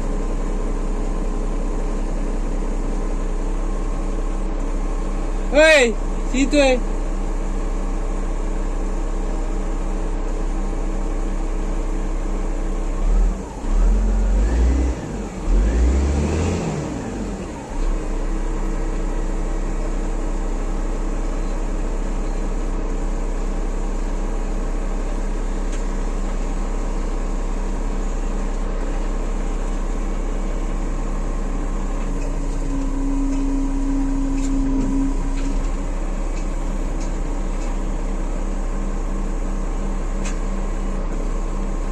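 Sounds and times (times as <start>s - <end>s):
heavy machine engine running: 0.0s - 41.9s
engine revving with deep rumble: 12.8s - 22.4s, 24.4s - 39.0s.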